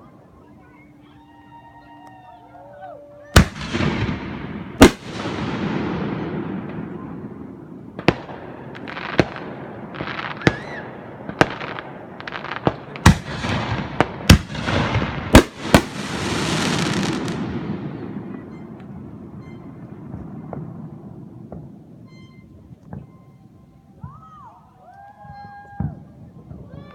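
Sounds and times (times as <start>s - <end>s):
fireworks bangs: 3.3s - 23.4s
fireworks crackling: 3.3s - 24.2s.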